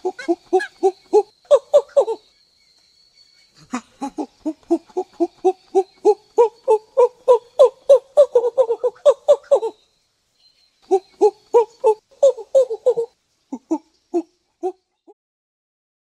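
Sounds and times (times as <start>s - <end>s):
monkey hooting and chattering: 0.0s - 2.2s, 3.5s - 9.8s, 10.9s - 14.8s.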